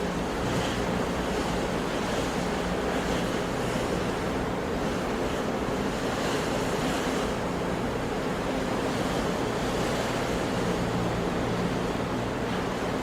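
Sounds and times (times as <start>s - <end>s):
sea waves washing in: 0.0s - 13.0s.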